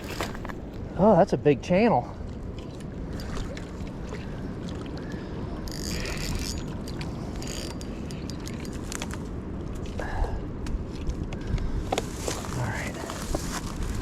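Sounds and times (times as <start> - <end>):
wind rumbling on microphone: 0.0 - 14.0.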